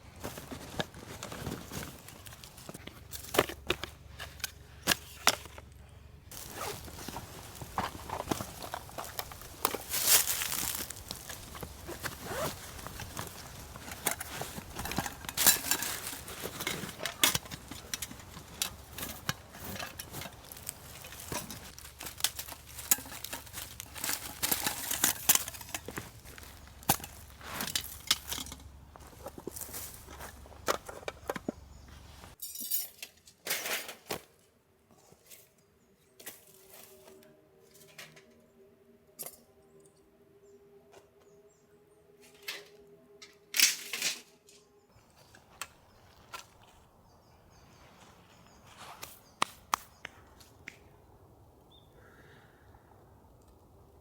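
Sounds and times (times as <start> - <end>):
handling clicks and rustles: 0.0 - 32.4.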